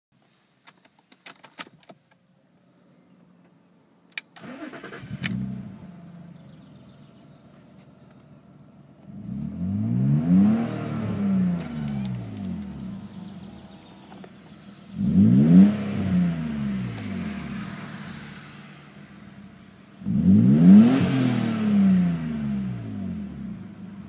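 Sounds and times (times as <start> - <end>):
car engine idling and revving: 4.2 - 24.0
clicks: 11.6 - 12.7.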